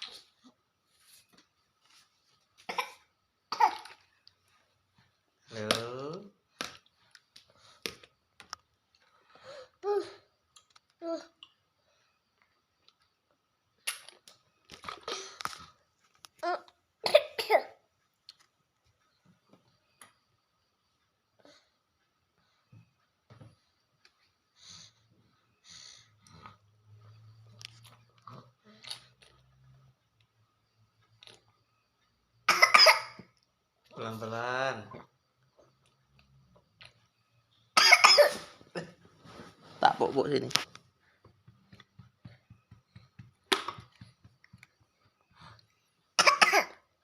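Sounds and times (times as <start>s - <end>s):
small child coughing: 2.7s - 4.0s, 17.0s - 17.8s, 32.5s - 33.2s, 37.8s - 38.5s, 46.2s - 46.8s.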